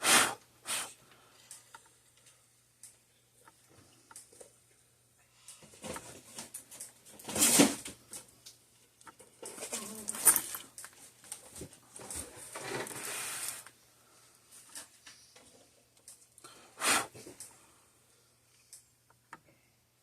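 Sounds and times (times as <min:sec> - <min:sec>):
hiss: 0:00.0 - 0:01.0, 0:16.8 - 0:17.2
faint steady hum: 0:00.3 - 0:20.0
rustles and scrapes on workbench: 0:09.4 - 0:13.7.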